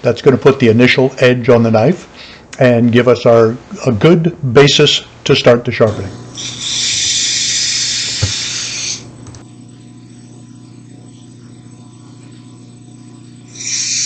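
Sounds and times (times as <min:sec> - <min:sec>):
grinder motor humming: 0:05.9 - 0:14.0.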